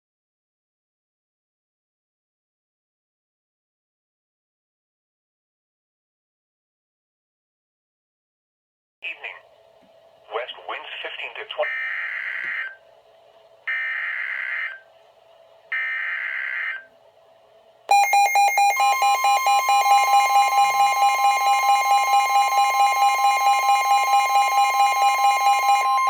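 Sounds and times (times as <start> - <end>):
fast-pulsing electronic alarm beep: 11.6 - 12.8, 13.7 - 14.8, 15.7 - 16.9, 17.9 - 26.0
steady high alarm tone: 11.6 - 12.8, 13.7 - 14.9, 15.7 - 16.9, 17.9 - 26.0.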